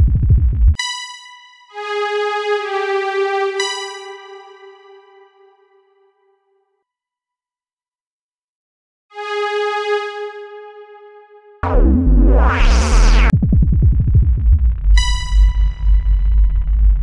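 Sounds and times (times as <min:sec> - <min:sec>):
dubstep music: 0:11.6 - 0:13.3.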